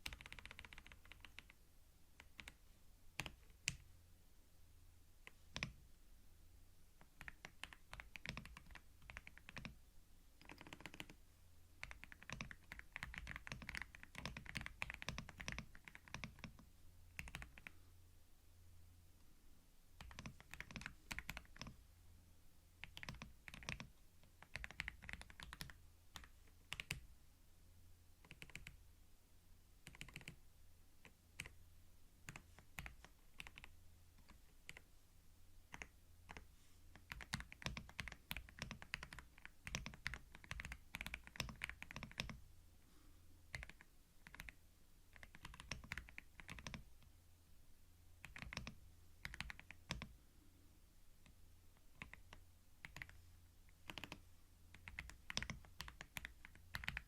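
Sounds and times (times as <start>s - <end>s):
typing on computer keyboard: 0.0s - 1.6s, 2.2s - 2.6s, 3.2s - 3.8s, 5.2s - 5.8s, 7.0s - 9.8s, 10.4s - 11.2s, 11.8s - 16.6s, 17.2s - 17.8s, 20.0s - 21.8s, 22.8s - 27.0s, 28.2s - 28.8s, 29.8s - 30.4s, 32.3s - 34.8s, 35.7s - 42.4s, 43.5s - 46.9s, 48.2s - 50.1s, 51.8s - 57.0s.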